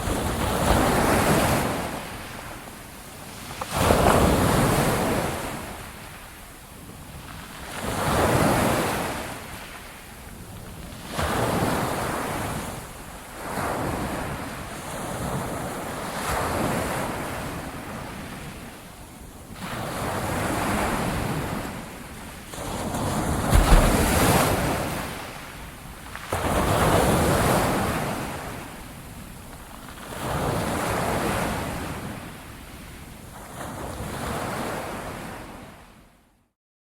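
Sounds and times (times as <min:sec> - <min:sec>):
low thump: 0:23.5 - 0:24.6
ocean waves washing: 0:23.5 - 0:25.3.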